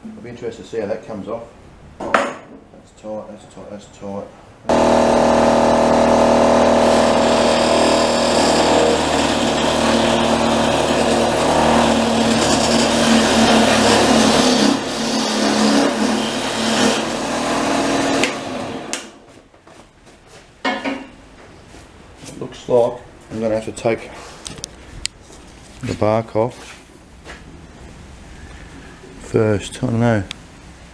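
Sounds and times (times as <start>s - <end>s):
turning tool scraping wood: 4.7s - 19.0s
wood lathe motor hum: 4.7s - 19.1s.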